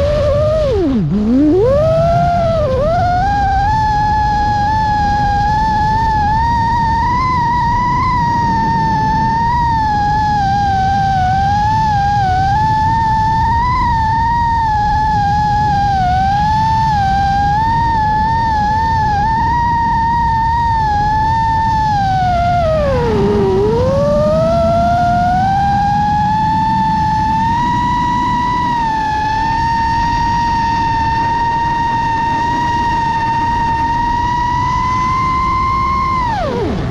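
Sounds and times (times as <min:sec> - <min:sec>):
drone motors whining: 0:00.0 - 0:36.9
wind rushing: 0:04.2 - 0:11.8.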